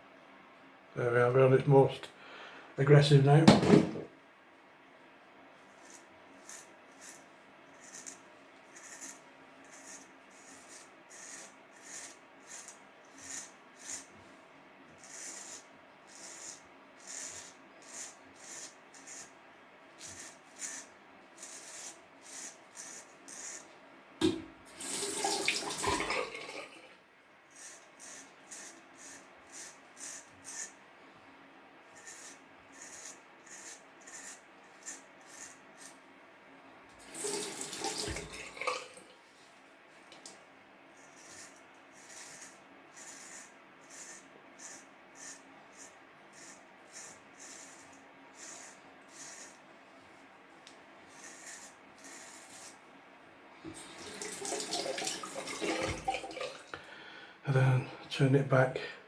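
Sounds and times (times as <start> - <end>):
razor scraping stubble: 5.8 - 14.1, 15.0 - 19.4, 20.0 - 23.7, 27.5 - 30.8, 31.9 - 36.0, 41.0 - 49.6, 50.6 - 52.9
tap water running: 24.2 - 27.0, 37.0 - 39.2, 53.6 - 56.9.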